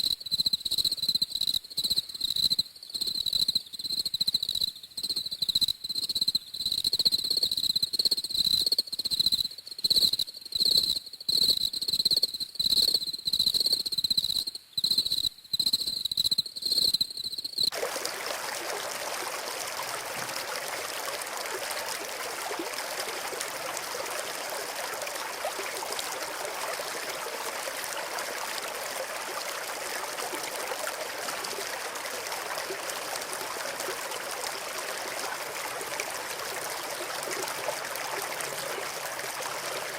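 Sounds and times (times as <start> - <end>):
running water: 17.7 - 39.9.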